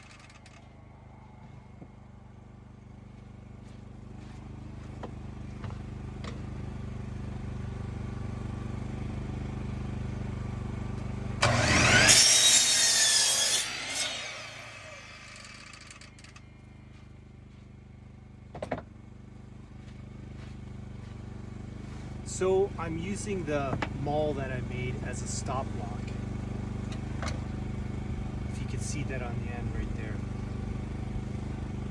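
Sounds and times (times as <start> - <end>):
power saw cutting wood: 11.4 - 16.5.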